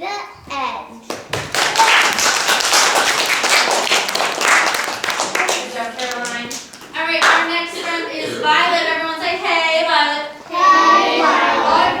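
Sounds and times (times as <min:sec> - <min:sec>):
hands clapping: 0:01.0 - 0:07.6
children singing: 0:10.3 - 0:12.0.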